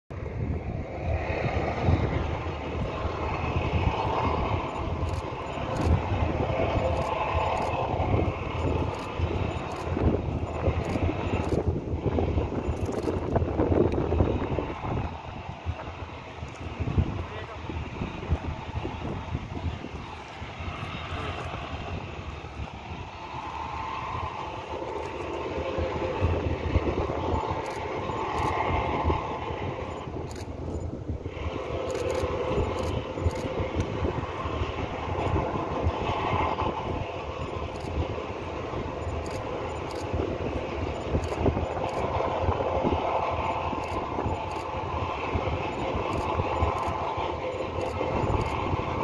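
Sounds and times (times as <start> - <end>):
engine drone: 0.1 - 49.0
wind buffeting microphone: 0.1 - 49.0.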